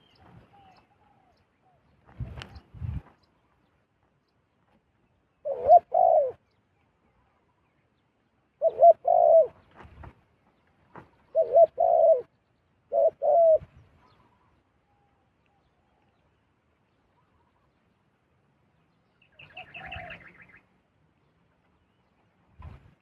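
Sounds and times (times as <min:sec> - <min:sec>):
dove cooing: 0:05.4 - 0:06.4, 0:08.6 - 0:09.6, 0:11.2 - 0:12.3, 0:12.9 - 0:13.8, 0:19.4 - 0:20.6.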